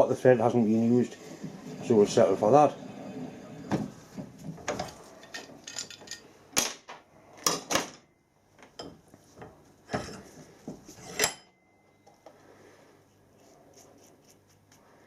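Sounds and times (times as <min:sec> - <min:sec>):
metal tools clanking on bench: 0:04.6 - 0:06.3, 0:11.0 - 0:11.5
metal tools scraping: 0:04.6 - 0:06.3, 0:09.9 - 0:11.4.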